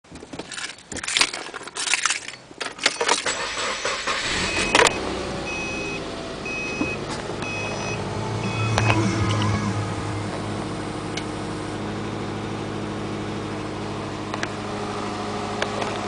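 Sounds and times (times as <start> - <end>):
keys rattling in ignition: 0.1 - 5.0
car engine starting and idling: 0.4 - 16.0
warning chime beeping: 4.1 - 10.3.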